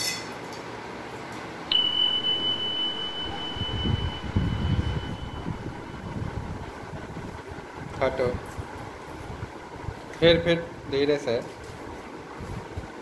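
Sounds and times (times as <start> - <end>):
high-pitched electronic beep: 1.7 - 6.4.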